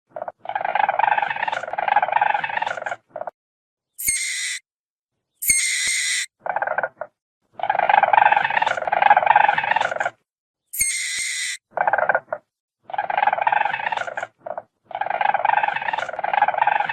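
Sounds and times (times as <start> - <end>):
weasel high-pitched squeals: 4.0 - 4.6, 5.4 - 6.8, 10.7 - 12.2.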